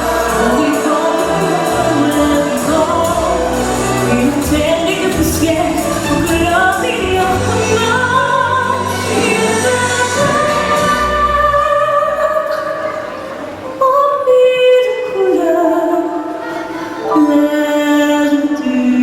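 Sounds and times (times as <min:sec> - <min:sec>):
show music with singing: 0:00.0 - 0:13.8.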